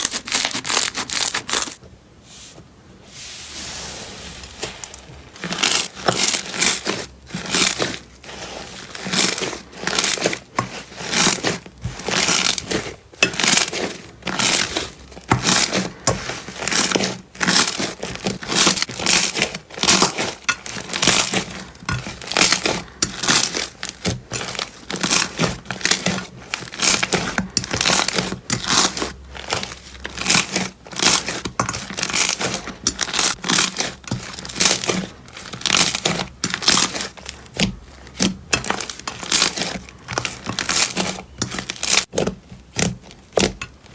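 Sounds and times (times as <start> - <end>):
slime crackling and crinkling: 0.0 - 1.8, 3.4 - 43.9.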